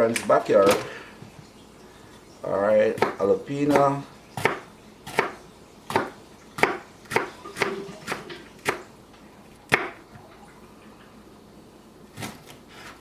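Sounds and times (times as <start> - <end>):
knife chopping on a cutting board: 2.9 - 8.9, 9.7 - 10.0, 12.2 - 13.0.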